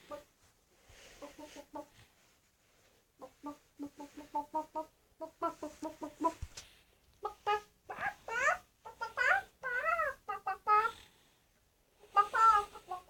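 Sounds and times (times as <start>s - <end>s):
person imitating hen clucking: 7.2s - 11.0s, 12.1s - 13.0s.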